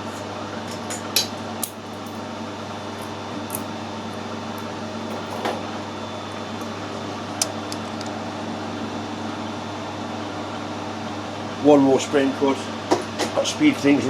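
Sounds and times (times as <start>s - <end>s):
metal lathe motor hum: 0.0s - 11.6s.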